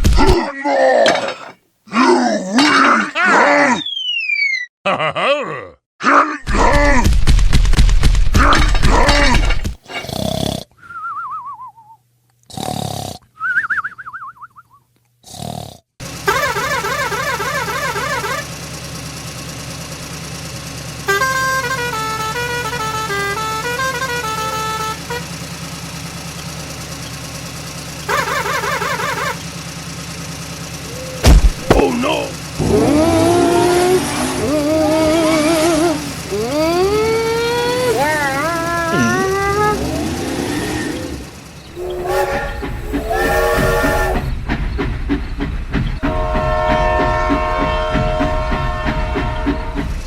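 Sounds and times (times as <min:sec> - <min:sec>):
small engine rumbling: 0:00.0 - 0:04.1, 0:08.3 - 0:10.6, 0:16.0 - 0:50.0
train horn blasts: 0:21.1 - 0:25.7, 0:41.8 - 0:44.3, 0:46.0 - 0:49.9
warbling horn: 0:32.5 - 0:40.2, 0:41.2 - 0:44.2
train wheels clattering on rails: 0:38.8 - 0:50.0.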